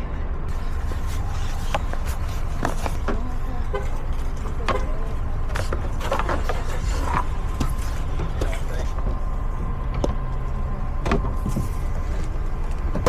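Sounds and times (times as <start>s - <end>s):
vehicle low rumble: 0.0s - 13.0s.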